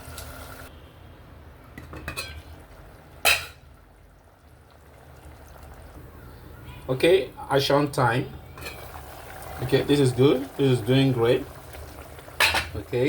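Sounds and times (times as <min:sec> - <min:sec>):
metal cookware clinking: 0:01.8 - 0:02.5, 0:03.2 - 0:03.6, 0:08.5 - 0:10.8, 0:12.3 - 0:13.0.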